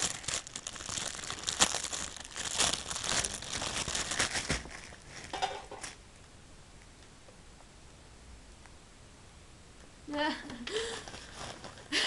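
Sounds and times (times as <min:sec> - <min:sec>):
packaging crinkling and tearing: 0:00.0 - 0:06.0, 0:11.0 - 0:11.9.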